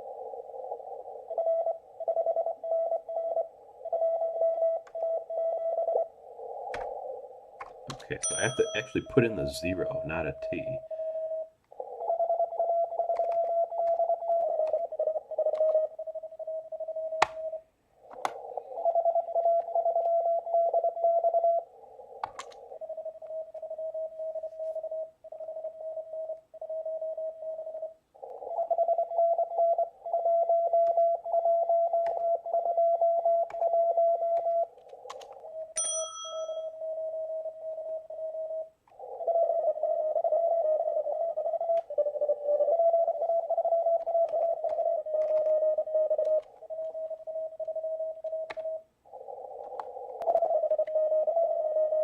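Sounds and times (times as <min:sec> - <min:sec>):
morse code tone: 0:08.0 - 0:10.9
sharp clicks: 0:13.1 - 0:14.8, 0:22.2 - 0:22.6, 0:34.4 - 0:35.4.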